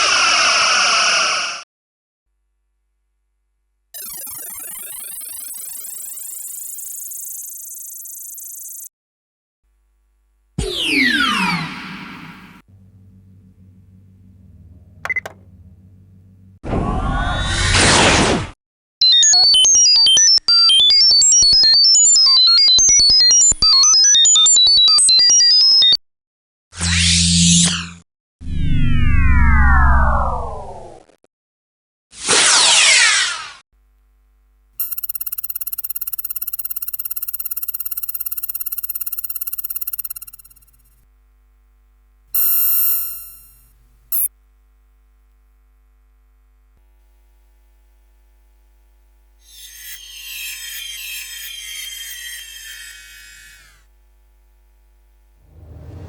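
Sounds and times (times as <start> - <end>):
rapid electronic beeps: 4.0 - 8.9, 34.8 - 40.9, 42.4 - 43.6
steady laser tone: 4.0 - 8.9, 34.8 - 40.9, 42.4 - 43.6.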